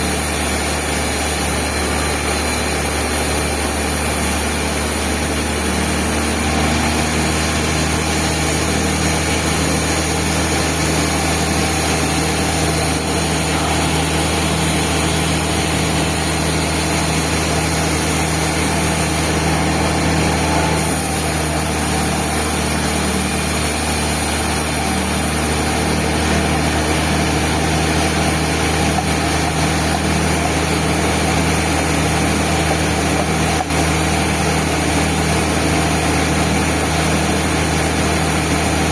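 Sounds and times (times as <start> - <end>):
band sawmill humming: 0.0 - 38.9.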